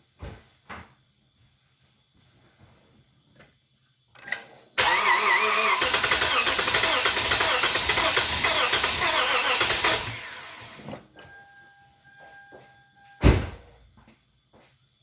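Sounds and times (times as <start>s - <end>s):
car starter cranking: 4.8s - 10.9s
loud thump: 13.2s - 13.6s.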